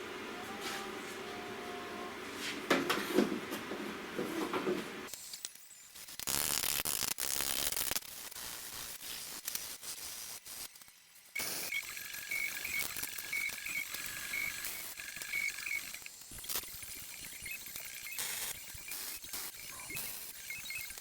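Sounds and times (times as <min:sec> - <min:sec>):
arc welder crackling: 0:05.1 - 0:21.0.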